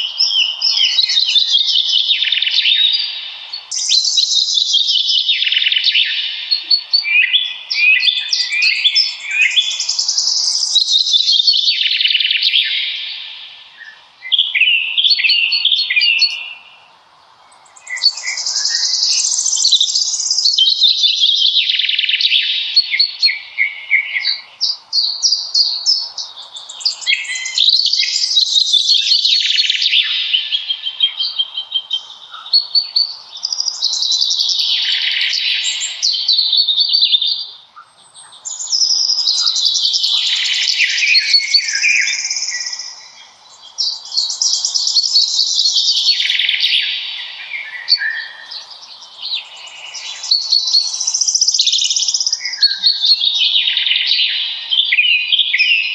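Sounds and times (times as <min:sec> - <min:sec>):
songbirds trilling: 0:00.0 - 0:55.9.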